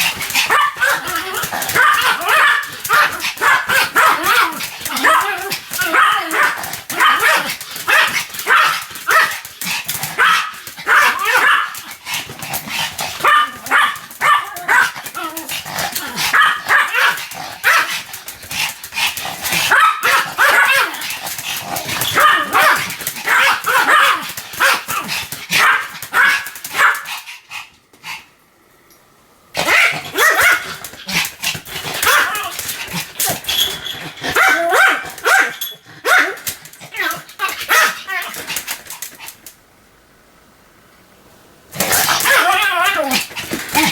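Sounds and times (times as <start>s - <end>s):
small dog yapping: 0.0s - 9.5s, 10.1s - 11.9s, 13.2s - 18.0s, 19.6s - 21.2s, 21.8s - 27.1s, 29.6s - 31.3s, 31.9s - 33.5s, 34.3s - 38.7s, 41.8s - 43.9s.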